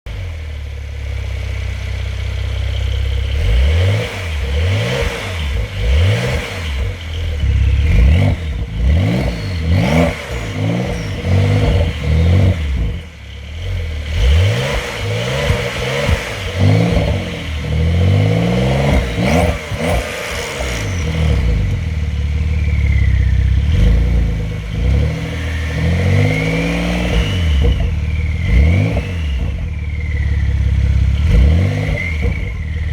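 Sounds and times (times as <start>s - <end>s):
car engine revving: 0.1s - 32.9s.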